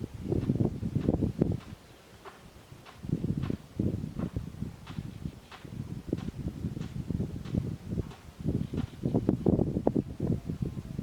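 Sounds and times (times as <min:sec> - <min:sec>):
leaves rustling: 0:00.0 - 0:10.7
wind buffeting microphone: 0:00.0 - 0:11.0.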